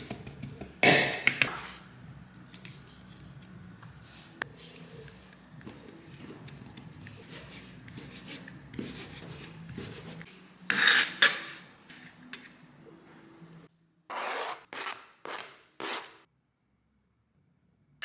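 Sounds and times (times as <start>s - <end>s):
rasping scraping strokes: 14.1s - 16.2s.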